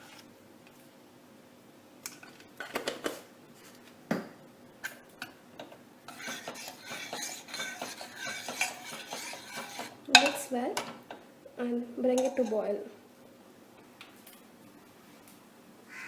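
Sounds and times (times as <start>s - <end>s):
spoon scraping pot: 5.2s - 11.2s, 12.1s - 12.7s
metal spoon clinking on pot: 6.1s - 11.0s, 12.1s - 12.6s.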